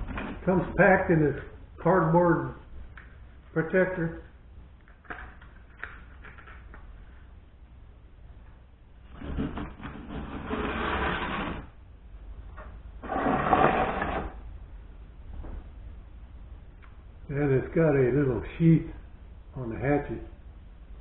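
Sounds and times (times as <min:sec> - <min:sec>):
cardboard rustling and scraping: 0:09.1 - 0:11.7.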